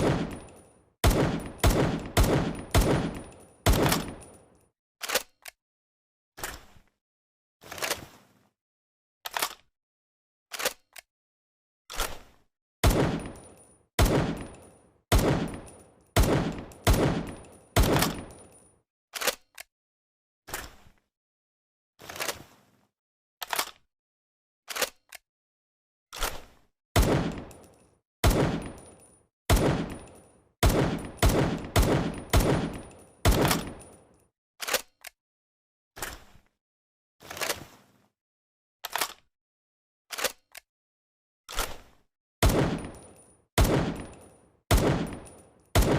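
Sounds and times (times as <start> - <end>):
imitation pistol shots: 0.0 - 4.2, 12.8 - 13.4, 14.0 - 18.3, 27.0 - 27.5, 28.2 - 28.7, 29.5 - 30.0, 30.6 - 33.8, 42.4 - 43.0, 43.6 - 45.9.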